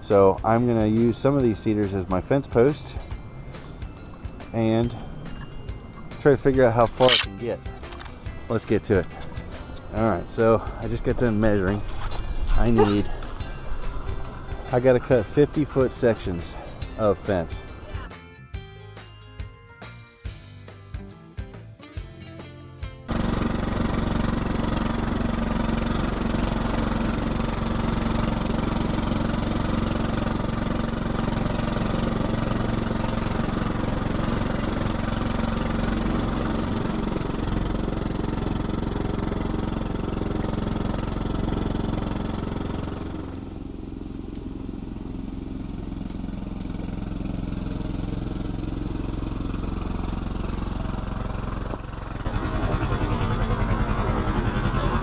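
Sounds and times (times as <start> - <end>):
small engine running: 0.0 - 18.2, 23.0 - 55.0.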